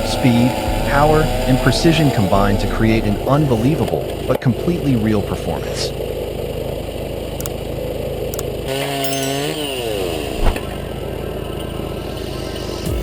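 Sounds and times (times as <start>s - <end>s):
chainsaw cutting log: 8.7s - 10.6s.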